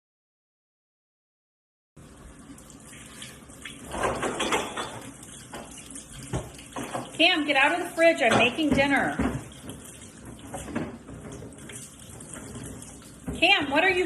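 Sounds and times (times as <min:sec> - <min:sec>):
tap running into a sink: 0:03.0 - 0:07.3, 0:08.2 - 0:14.0
clatters in a sink: 0:03.8 - 0:14.0.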